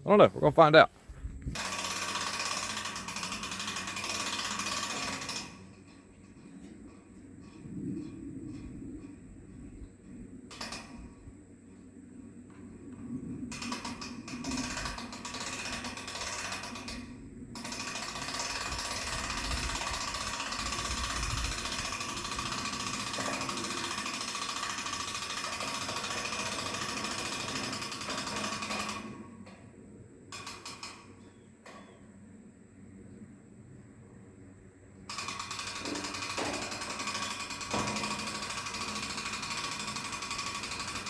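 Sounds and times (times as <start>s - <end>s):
winch mechanical clatter: 35.1s - 41.0s.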